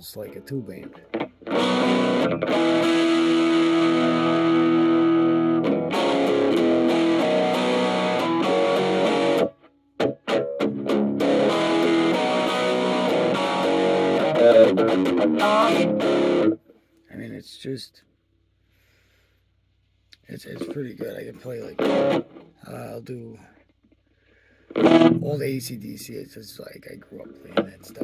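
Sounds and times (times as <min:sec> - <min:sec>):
overdriven electric guitar chords: 0:00.8 - 0:16.6, 0:21.6 - 0:22.6, 0:24.7 - 0:25.4.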